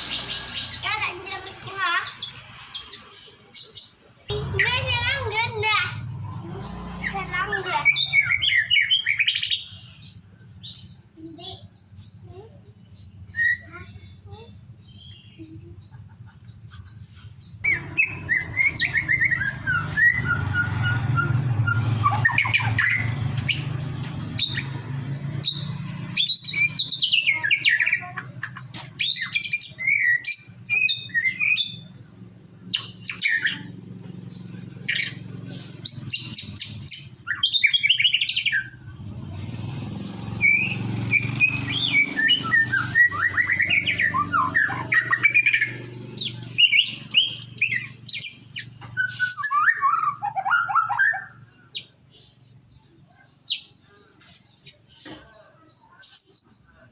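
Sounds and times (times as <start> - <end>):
bird singing whistled phrases: 7.5 - 9.7, 13.3 - 14.0, 17.6 - 24.7, 29.0 - 31.8, 40.3 - 51.5.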